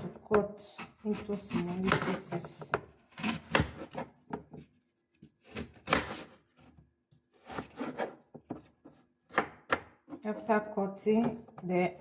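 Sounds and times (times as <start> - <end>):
knife cutting an apple: 0.4 - 4.1, 5.4 - 10.5.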